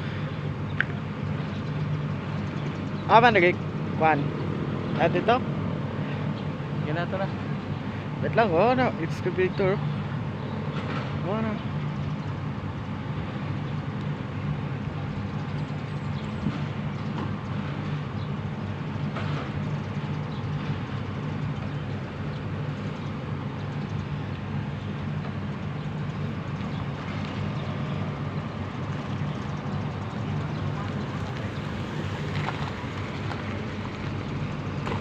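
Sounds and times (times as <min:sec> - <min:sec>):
excavator diesel engine running: 0:00.0 - 0:35.0.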